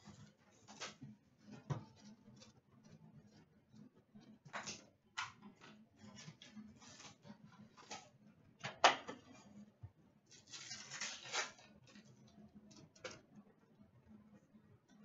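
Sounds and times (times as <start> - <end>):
foil tearing: 10.3 - 12.0.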